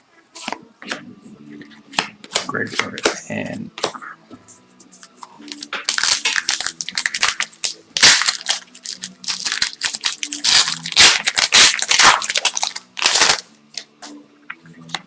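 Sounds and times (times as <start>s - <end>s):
plastic wrapper crinkling: 5.4s - 13.9s.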